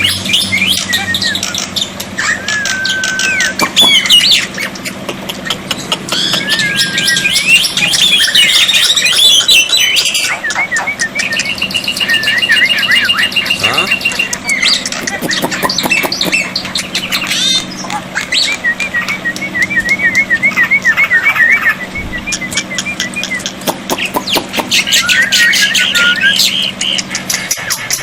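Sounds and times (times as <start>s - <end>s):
fast wavering whistle: 2.3s - 4.4s, 6.4s - 14.6s
myna squawks and clicks: 7.5s - 20.0s.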